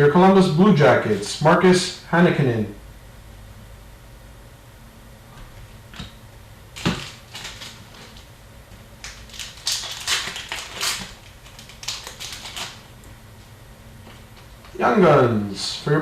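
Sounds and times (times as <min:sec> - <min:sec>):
card packs crinkling and tearing: 0:06.8 - 0:08.3, 0:09.0 - 0:12.9.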